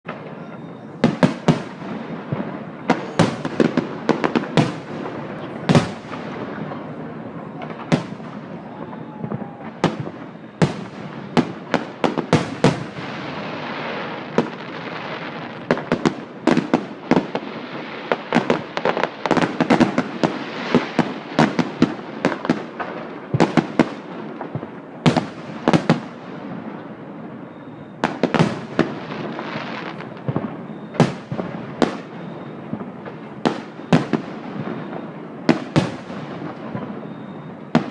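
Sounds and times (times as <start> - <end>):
fireworks crackling: 0.0 - 37.9.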